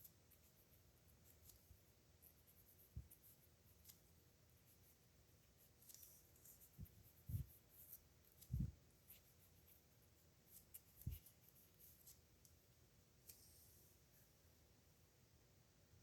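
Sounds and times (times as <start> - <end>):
pen scratching on paper: 0.0 - 5.0, 5.6 - 12.2.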